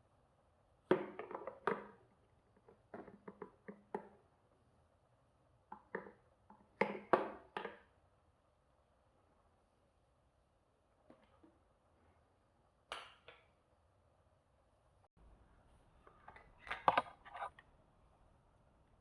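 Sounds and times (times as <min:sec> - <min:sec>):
plastic parts clicking and knocking: 0:16.2 - 0:17.6.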